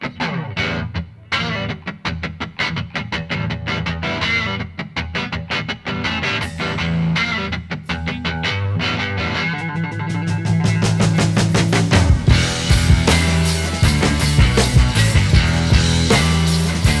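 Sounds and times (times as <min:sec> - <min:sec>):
rhythmic guitar: 0:00.0 - 0:17.0
steady bass line: 0:09.8 - 0:17.0.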